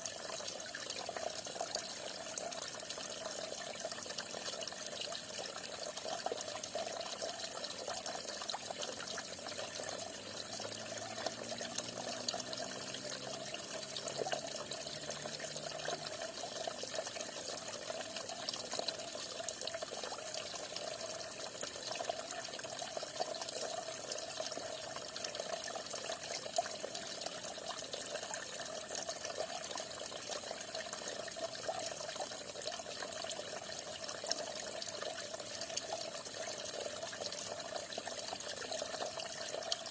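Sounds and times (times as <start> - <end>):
falling water splashing: 9.4 - 17.4.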